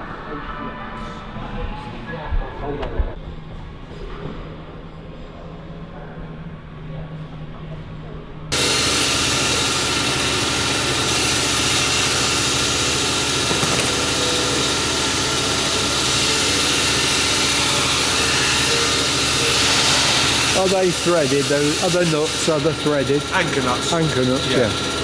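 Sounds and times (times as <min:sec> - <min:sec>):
workshop machine running: 0:08.5 - 0:25.0.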